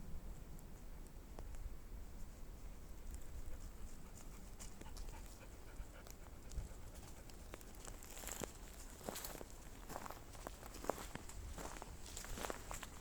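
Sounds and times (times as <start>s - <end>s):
dog panting: 3.5s - 7.4s.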